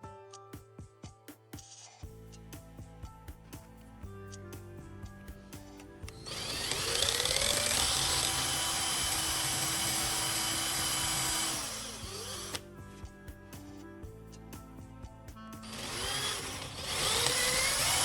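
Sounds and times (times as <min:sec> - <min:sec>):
background music: 0:00.0 - 0:18.0
power tool whine: 0:06.1 - 0:12.6, 0:15.6 - 0:18.0.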